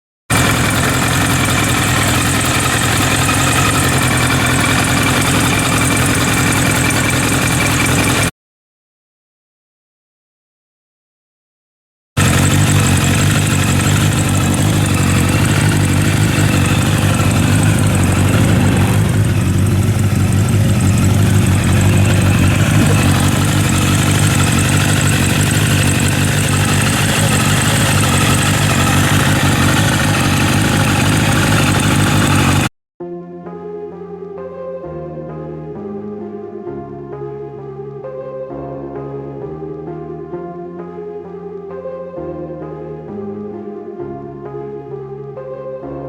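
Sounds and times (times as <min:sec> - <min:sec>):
motorcycle engine running: 0:00.3 - 0:08.3, 0:12.2 - 0:32.7.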